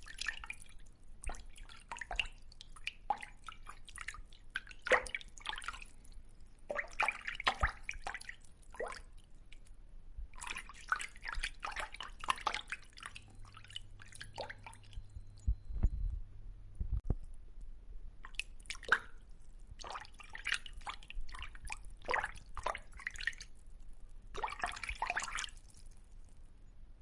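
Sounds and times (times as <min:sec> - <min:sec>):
water dripping and plopping: 0:00.0 - 0:15.9, 0:18.2 - 0:26.4
low thud: 0:15.4 - 0:17.2.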